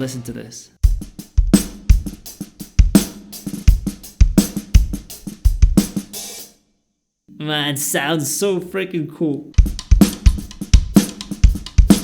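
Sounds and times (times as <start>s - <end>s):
drum kit groove: 0.0s - 6.6s, 9.4s - 12.0s.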